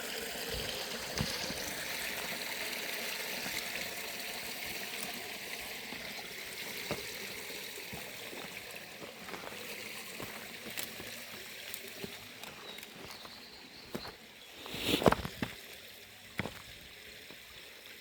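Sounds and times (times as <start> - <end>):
river rushing over stones: 0.0 - 13.1.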